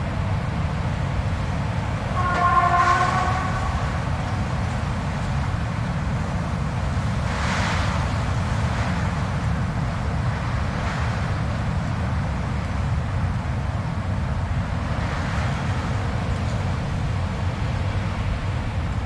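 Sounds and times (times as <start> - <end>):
blizzard wind blowing: 0.0 - 13.2.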